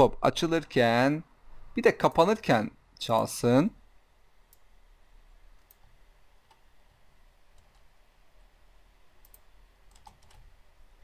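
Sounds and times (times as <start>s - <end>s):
computer mouse and keys clicking: 5.5s - 6.7s, 7.5s - 7.9s, 9.2s - 10.6s.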